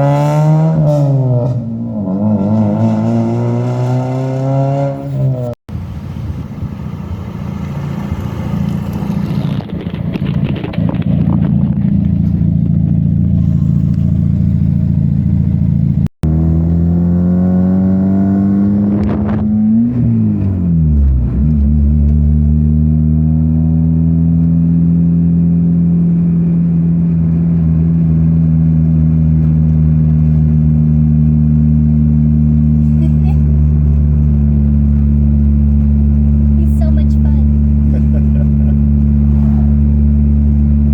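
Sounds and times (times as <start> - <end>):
car engine revving: 0.0 - 5.6, 6.8 - 40.9.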